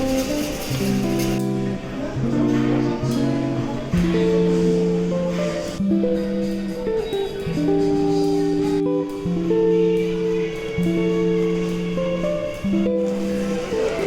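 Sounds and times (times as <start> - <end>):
plucked guitar chords: 0.0 - 14.0.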